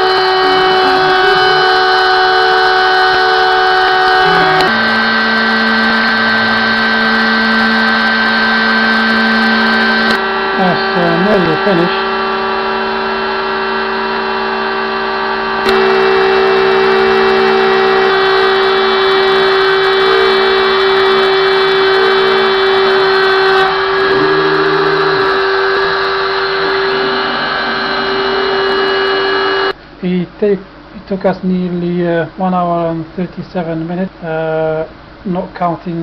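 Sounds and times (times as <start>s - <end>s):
cnc spindle whining: 0.0s - 29.8s
hiss of cutting: 15.7s - 29.7s.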